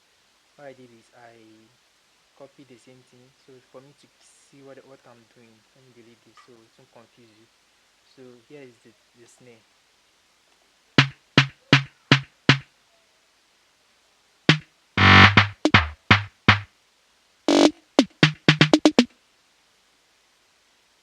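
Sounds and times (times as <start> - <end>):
programmed snare drum hits: 11.0 - 12.6, 14.5 - 16.7, 17.5 - 19.1.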